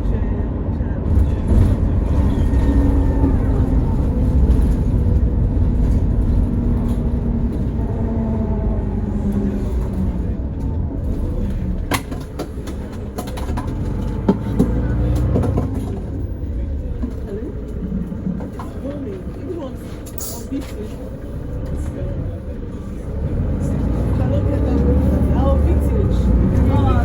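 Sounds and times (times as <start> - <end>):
bus engine and road rumble: 0.0 - 27.0
gearbox whining: 1.1 - 19.4
sharp knocks and rattles: 11.8 - 16.3.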